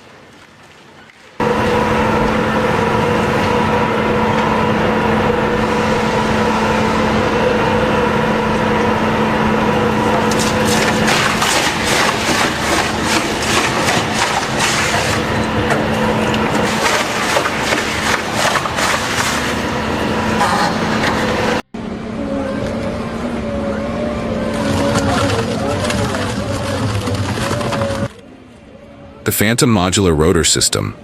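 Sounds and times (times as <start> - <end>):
machine droning hum: 1.4 - 31.0
wood cracking and crunching: 10.2 - 19.7.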